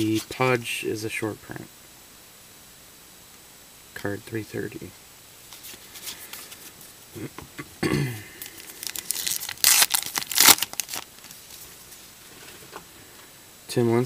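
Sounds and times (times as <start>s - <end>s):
card pack wrapper tearing and crinkling: 8.4s - 11.6s.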